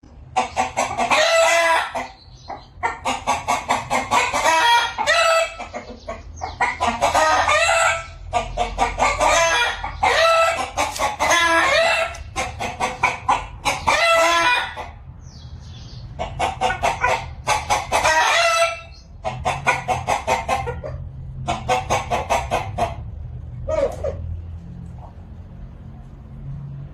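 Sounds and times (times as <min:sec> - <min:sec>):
hens clucking: 0:00.0 - 0:25.5
rooster crowing: 0:11.2 - 0:12.2.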